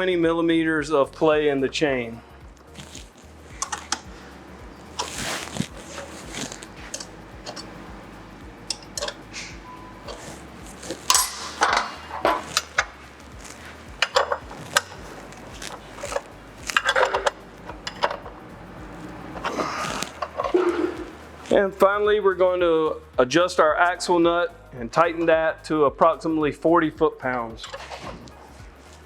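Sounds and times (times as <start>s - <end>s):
wrenches clinking on metal: 2.8s - 4.1s, 4.8s - 21.6s, 27.6s - 28.3s.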